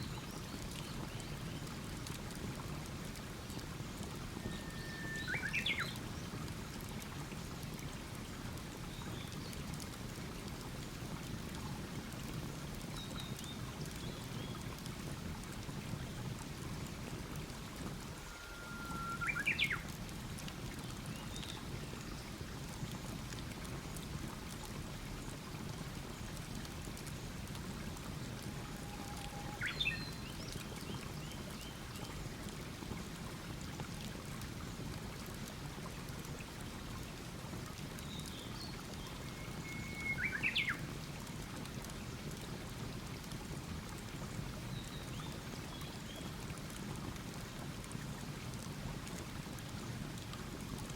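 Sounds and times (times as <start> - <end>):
bird whistling call: 4.4 - 5.9, 18.2 - 19.9, 39.4 - 40.7
short bird chirps: 18.2 - 19.8.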